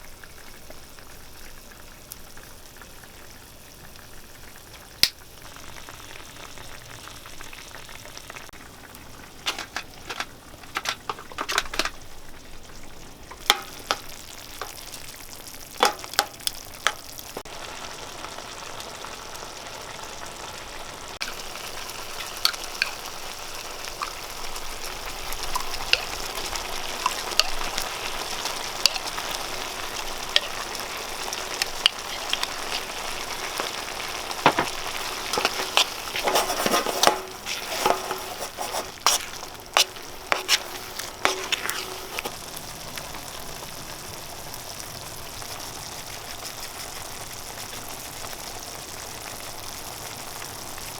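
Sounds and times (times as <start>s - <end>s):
food sizzling in a pan: 0.0s - 50.9s
utensil clicking against pan: 9.4s - 12.0s, 13.3s - 15.0s, 15.8s - 17.5s, 21.2s - 42.3s
utensil scraping a pan: 9.4s - 12.0s, 13.3s - 14.8s, 21.2s - 23.0s, 23.8s - 42.4s.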